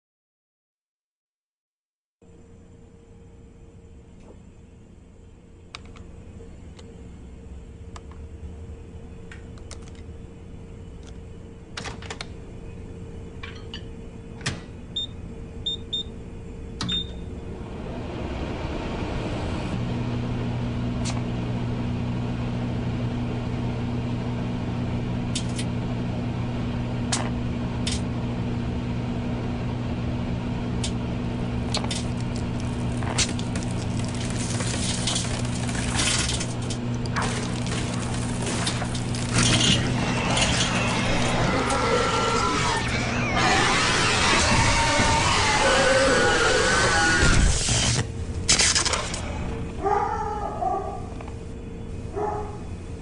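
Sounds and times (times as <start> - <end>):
microwave oven humming: 2.2 - 53.0
microwave clicks: 30.8 - 31.0.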